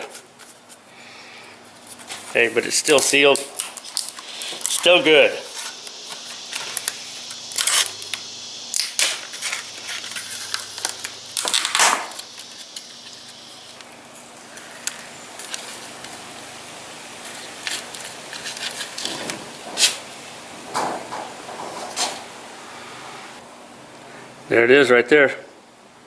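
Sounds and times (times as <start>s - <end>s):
rustling of packaging: 1.6s - 20.2s.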